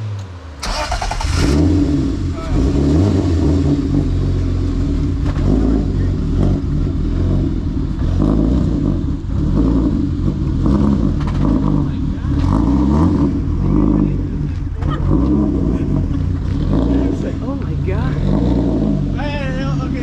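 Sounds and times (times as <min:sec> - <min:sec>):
car engine revving: 0:00.0 - 0:20.0.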